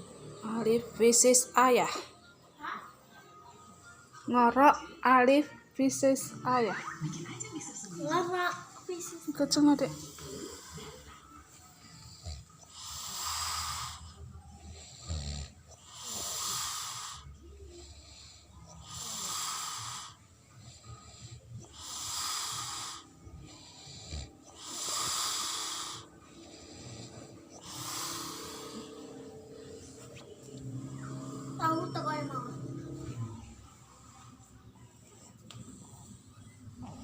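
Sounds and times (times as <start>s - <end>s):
person snoring: 9.9s - 11.1s, 11.9s - 34.3s.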